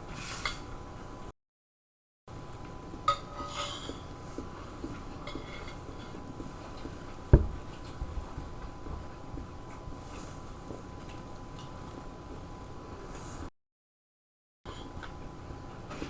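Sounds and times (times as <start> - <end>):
cutlery clinking on a plate: 3.1 - 4.1, 5.2 - 6.2
dull heavy thump: 7.3 - 8.3.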